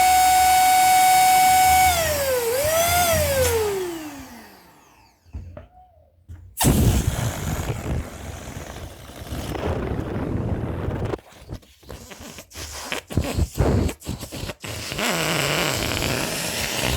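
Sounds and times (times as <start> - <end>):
air escaping from balloon: 6.6 - 16.9.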